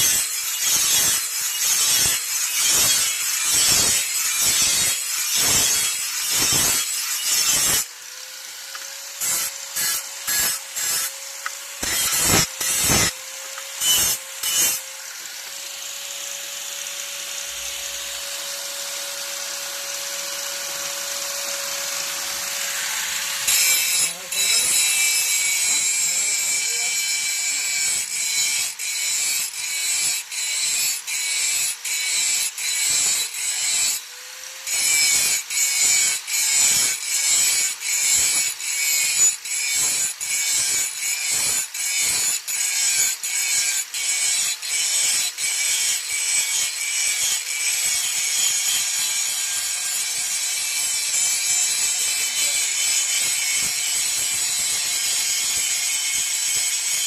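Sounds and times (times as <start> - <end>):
steel blade being sharpened: 0.0 - 7.8, 9.2 - 13.2, 13.8 - 14.8.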